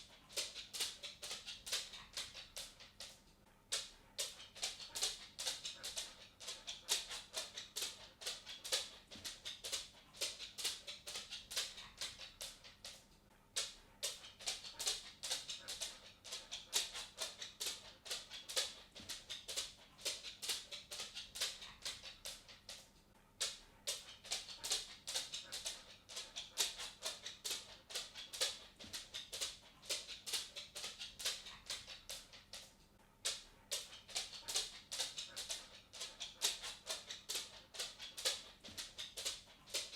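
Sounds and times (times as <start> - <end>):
dog claws clicking on wooden floor: 0.0 - 39.9.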